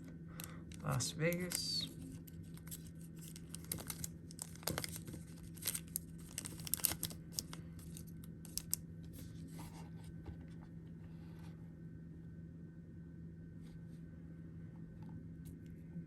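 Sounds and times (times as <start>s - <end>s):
faint steady hum: 0.0s - 16.0s
packaging crinkling and tearing: 0.4s - 9.3s.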